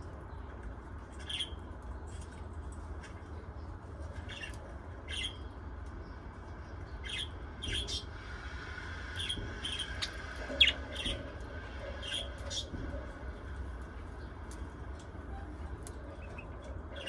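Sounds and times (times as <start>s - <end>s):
parrots chirping: 1.2s - 1.6s, 4.2s - 5.5s, 7.0s - 8.1s, 9.2s - 11.3s, 12.0s - 12.8s.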